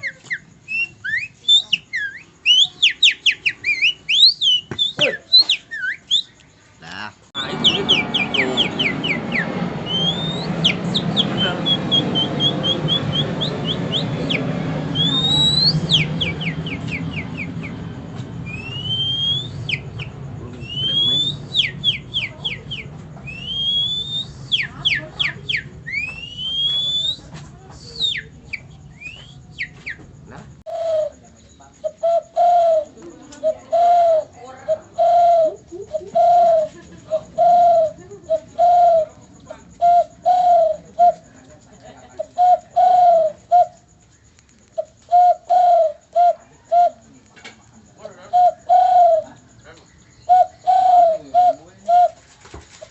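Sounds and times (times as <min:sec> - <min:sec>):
man whistling birdsong: 0:00.0 - 0:06.4, 0:07.4 - 0:17.8, 0:18.5 - 0:22.6, 0:23.3 - 0:24.8, 0:25.9 - 0:28.3
man cooing like a dove: 0:48.4 - 0:49.3.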